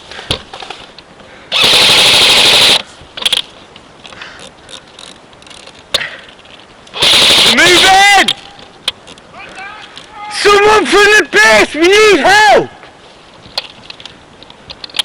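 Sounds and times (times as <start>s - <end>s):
airsoft rifle full-auto burst: 1.5s - 2.8s, 7.0s - 8.2s.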